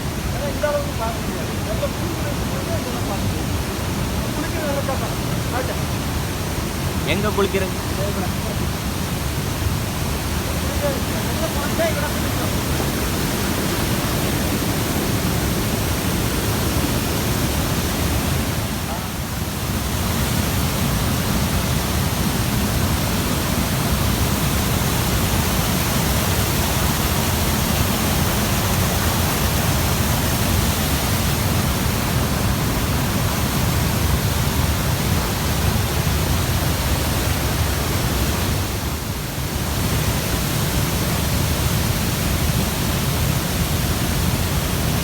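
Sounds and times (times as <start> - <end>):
waterfall rushing: 0.0 - 45.0.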